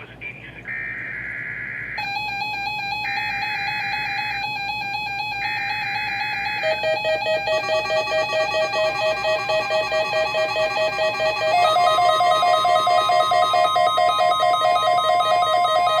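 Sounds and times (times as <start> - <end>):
pulsing electronic alarm: 0.7 - 16.0
steady tone: 6.6 - 16.0
buzzy digital header bursts: 6.7 - 16.0.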